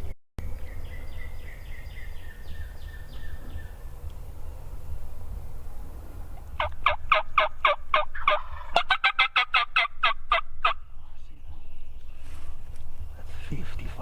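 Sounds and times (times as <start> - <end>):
wild turkey yelping: 6.6 - 10.9.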